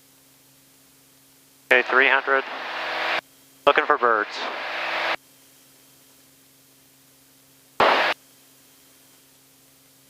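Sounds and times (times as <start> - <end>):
faint steady hum: 0.0 - 10.0
radio static burst: 1.7 - 5.2, 7.8 - 8.2.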